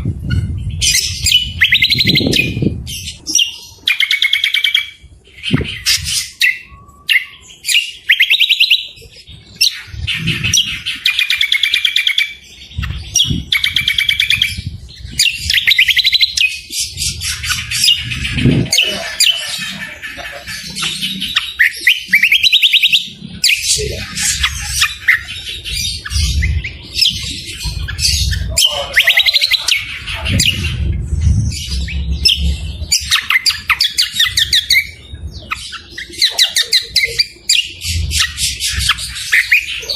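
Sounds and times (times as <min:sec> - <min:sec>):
songbirds trilling: 0:00.0 - 0:39.9
low rumble: 0:16.6 - 0:21.6, 0:23.1 - 0:39.3
harsh bird phrases: 0:17.5 - 0:26.8, 0:27.6 - 0:30.9, 0:31.7 - 0:38.1.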